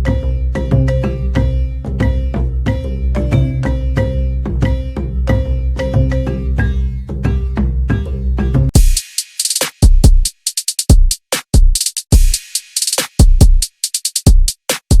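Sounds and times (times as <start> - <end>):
electronic melodic passage: 0.0 - 7.5
drum machine beat: 0.0 - 15.0.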